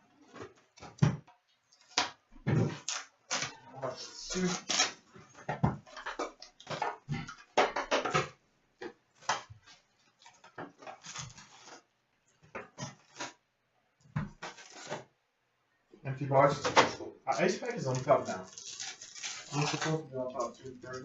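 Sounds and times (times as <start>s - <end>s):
cardboard and wrappers rustling: 9.2s - 13.4s, 14.3s - 15.1s, 16.8s - 21.0s.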